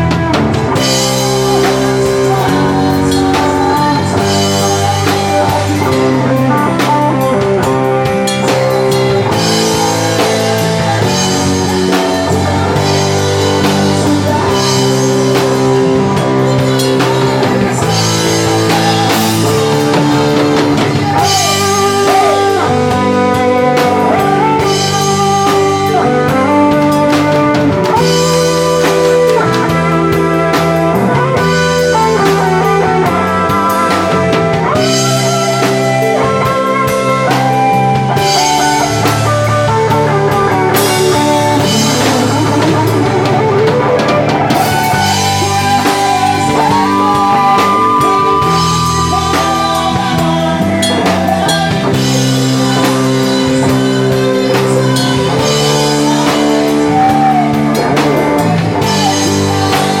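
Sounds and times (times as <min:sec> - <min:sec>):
band playing rock ballad: 0:00.0 - 1:00.0
gliding lead melody: 0:00.0 - 1:00.0.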